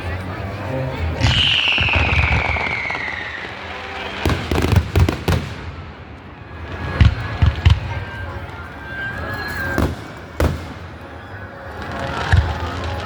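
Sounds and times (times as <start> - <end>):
fireworks crackling: 1.1 - 13.0
firework falling whistle: 1.2 - 4.8
fireworks sharp bangs: 1.2 - 8.2, 9.7 - 13.0.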